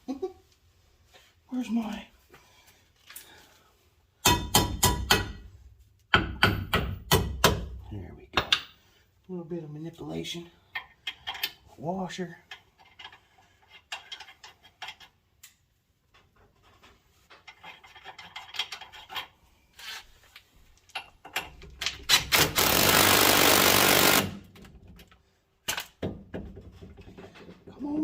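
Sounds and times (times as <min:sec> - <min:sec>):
metal clicks and rattles of tools: 0:10.7 - 0:11.7, 0:12.5 - 0:19.4, 0:20.3 - 0:22.6
impact wrench running: 0:22.1 - 0:24.5.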